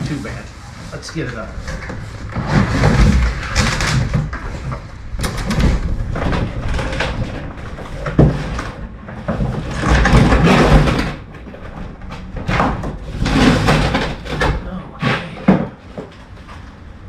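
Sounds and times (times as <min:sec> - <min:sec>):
cardboard rustling and scraping: 0:00.0 - 0:16.8.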